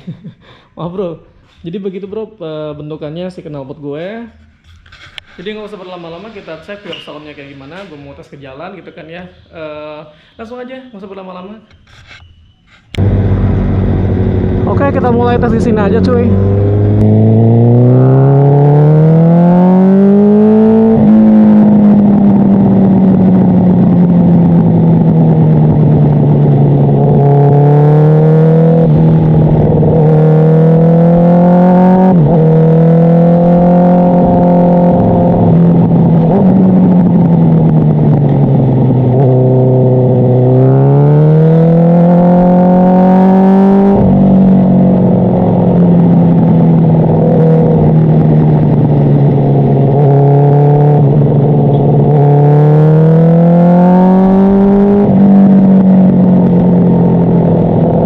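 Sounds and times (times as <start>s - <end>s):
motorcycle engine shifting gears: 12.3s - 58.0s.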